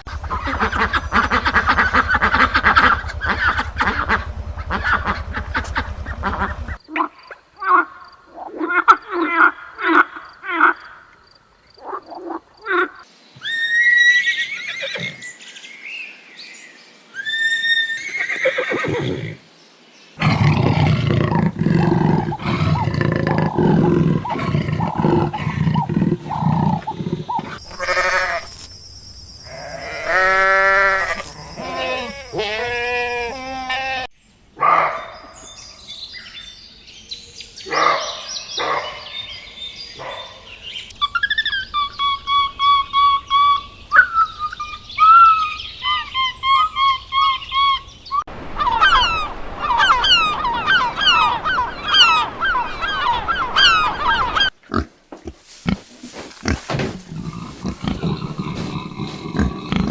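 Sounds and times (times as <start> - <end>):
farm animal calls: 0.0 - 11.2, 20.2 - 28.7, 29.4 - 35.0, 40.0 - 59.9.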